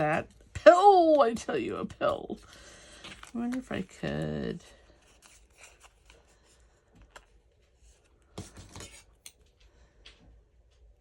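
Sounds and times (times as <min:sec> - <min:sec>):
paper rustling: 0:01.0 - 0:09.3.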